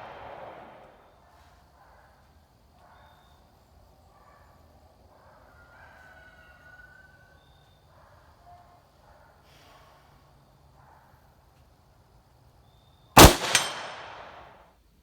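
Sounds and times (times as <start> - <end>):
rooster crowing: 5.5 - 7.5.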